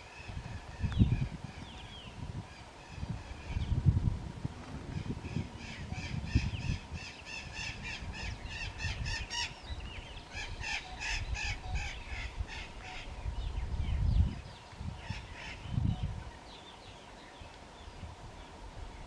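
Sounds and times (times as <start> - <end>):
low uneven rumble: 0.7 - 10.3.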